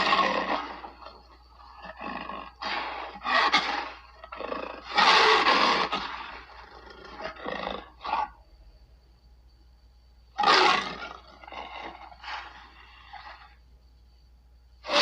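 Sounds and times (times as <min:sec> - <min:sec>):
big cat roaring and snarling: 0:00.0 - 0:08.3, 0:10.4 - 0:13.6.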